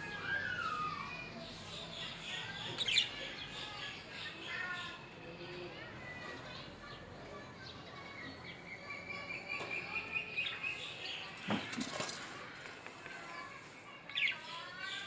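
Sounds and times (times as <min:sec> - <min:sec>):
lovebirds chirping and chattering: 0:00.0 - 0:15.0.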